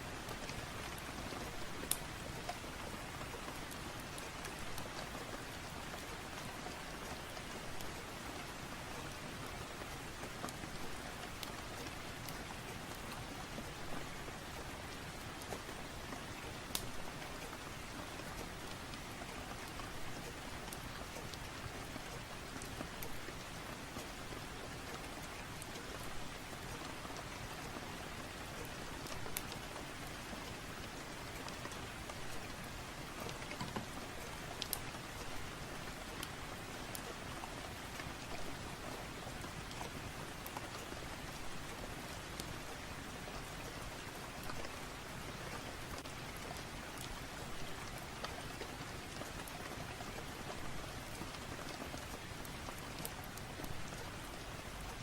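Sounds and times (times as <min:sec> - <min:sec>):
rain drops ticking: 0:00.0 - 0:55.0
steady rain hissing: 0:00.0 - 0:55.0.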